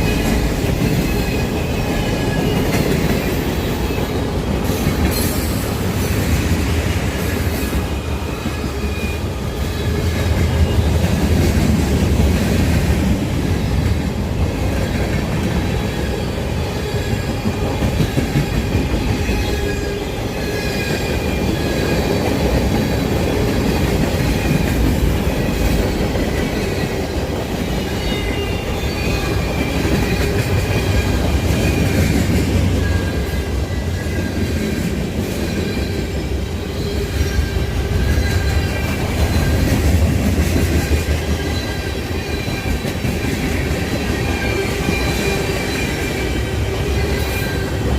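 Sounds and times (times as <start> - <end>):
train wheels rumbling on rails: 0.0 - 47.9.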